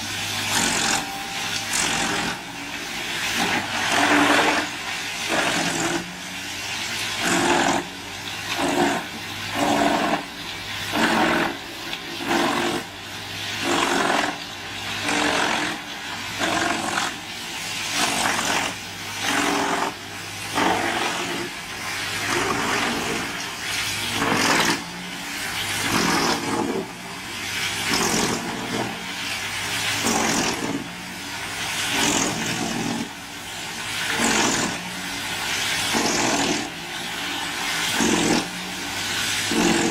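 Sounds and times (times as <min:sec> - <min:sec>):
wood chipper bursts: 0:00.0 - 0:39.9
wood chipper engine running: 0:00.0 - 0:39.9.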